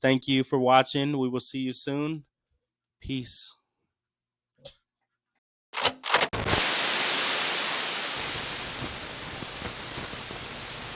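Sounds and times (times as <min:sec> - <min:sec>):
static crackling glitches: 0:06.3 - 0:10.9
loud steady static hiss: 0:06.4 - 0:10.9.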